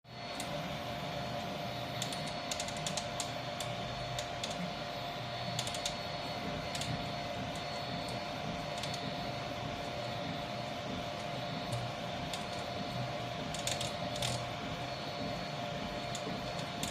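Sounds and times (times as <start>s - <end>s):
printer motor whine: 0.1s - 16.9s.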